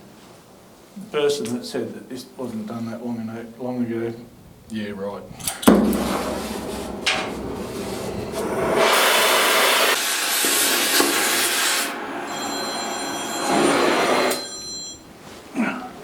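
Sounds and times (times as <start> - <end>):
cutting torch hissing: 6.3 - 11.9
high ringing tone: 12.2 - 15.1.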